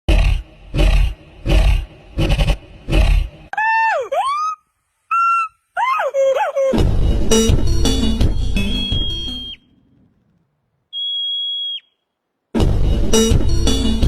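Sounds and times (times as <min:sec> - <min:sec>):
harsh rough calls: 0:00.1 - 0:05.8, 0:06.7 - 0:11.8
gibbon whooping calls: 0:03.5 - 0:06.8, 0:10.9 - 0:11.9.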